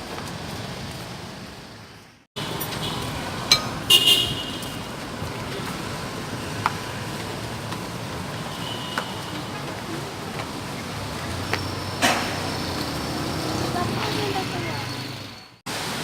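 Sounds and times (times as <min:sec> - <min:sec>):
road traffic: 0:00.0 - 0:16.0
horn toot: 0:03.8 - 0:04.9.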